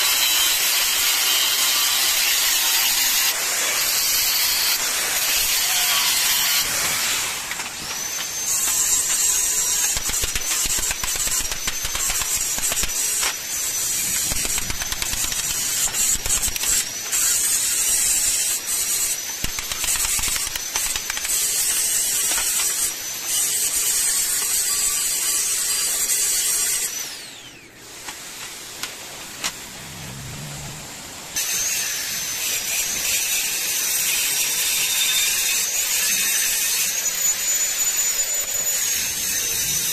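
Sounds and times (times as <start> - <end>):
electric power tool whining: 0.0 - 29.0.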